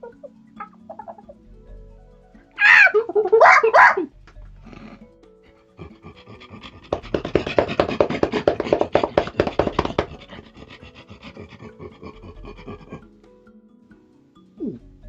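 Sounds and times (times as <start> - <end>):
man doing animal impression: 2.6 - 13.1, 14.6 - 14.9.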